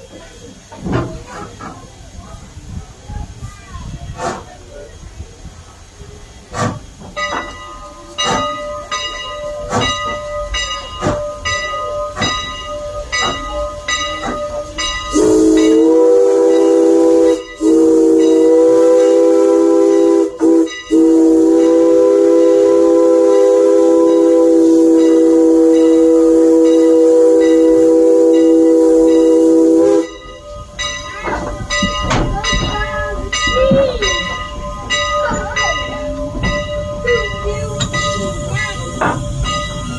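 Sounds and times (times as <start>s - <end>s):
steam locomotive chuffing: 0.0s - 39.9s
steady ringing bell: 7.2s - 15.8s, 20.7s - 21.0s, 25.0s - 29.4s, 30.0s - 39.9s
steam whistle chord: 14.5s - 30.8s.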